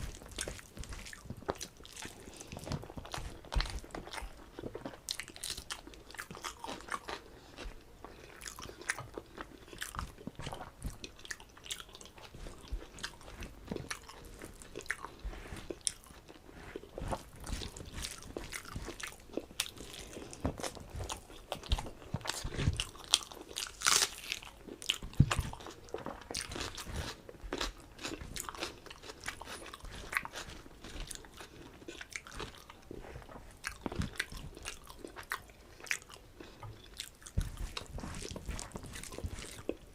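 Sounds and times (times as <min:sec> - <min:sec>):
person chewing and biting food: 0:00.0 - 0:39.9.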